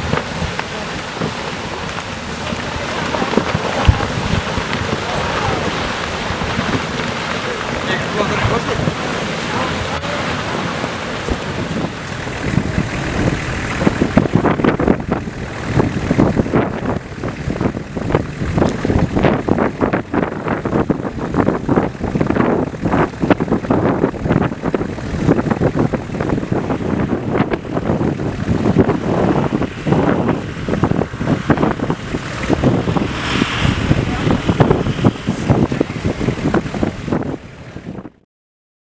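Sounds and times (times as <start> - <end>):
hissing rush: 0.0 - 16.4, 27.4 - 37.7
eruption bursts and cracks: 0.0 - 38.2
low roar of volcanic eruption: 0.0 - 38.2
wind buffeting microphone: 0.0 - 38.2.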